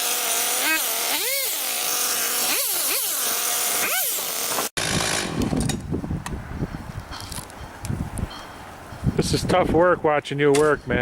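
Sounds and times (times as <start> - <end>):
chainsaw revving: 0.0 - 5.5
wind buffeting microphone: 4.8 - 11.0.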